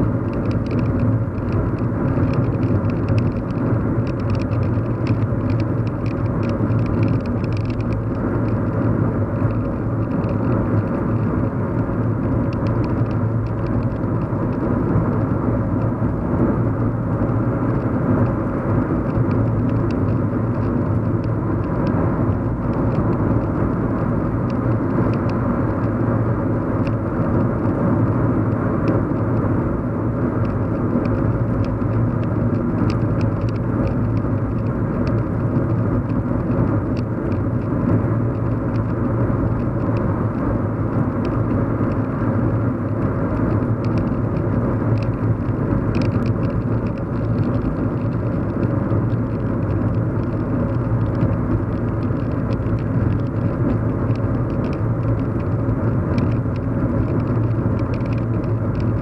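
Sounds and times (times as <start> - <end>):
engine and road rumble: 0.0 - 59.0
faint ticks: 0.3 - 8.6, 12.5 - 15.0, 30.4 - 35.2, 43.0 - 59.0.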